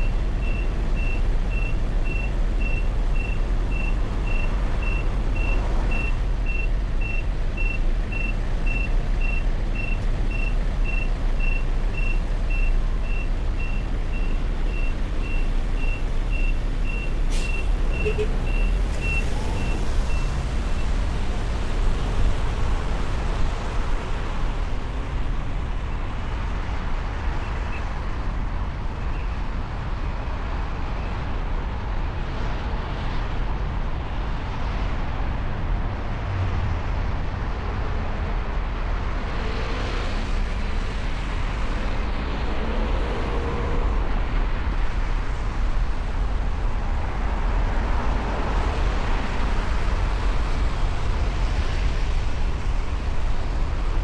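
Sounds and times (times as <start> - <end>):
high electronic beeps: 0.0 - 20.8
traffic engine rumble: 0.0 - 54.0.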